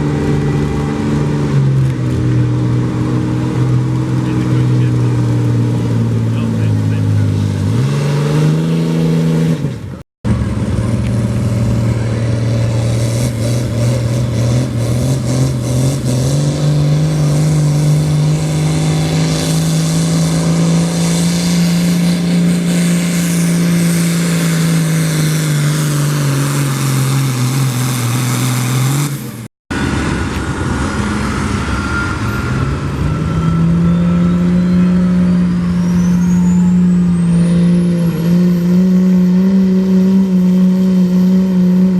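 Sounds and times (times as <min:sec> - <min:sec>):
diesel engine at high revs: 0:00.0 - 0:41.9
turbocharger whistle rising: 0:31.1 - 0:41.9.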